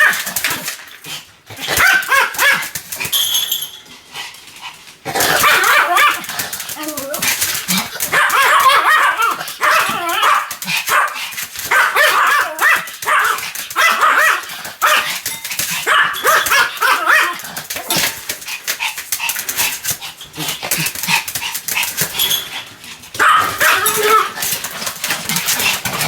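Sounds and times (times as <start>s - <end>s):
small dog yapping: 1.6s - 2.7s, 5.2s - 15.1s, 15.8s - 18.2s, 23.2s - 24.6s.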